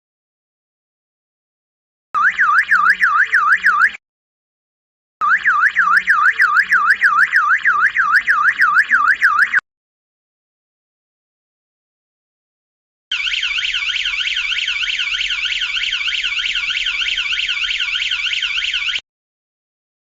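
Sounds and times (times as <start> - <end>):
alarm siren electronic warble: 2.2 - 4.0, 5.2 - 9.6, 13.1 - 19.0.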